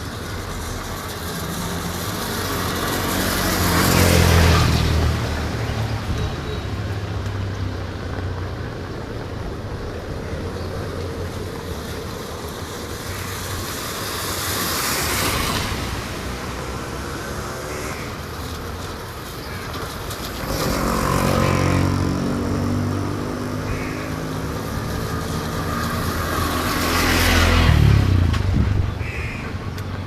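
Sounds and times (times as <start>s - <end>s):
vehicle engine passing: 20.4s - 28.8s.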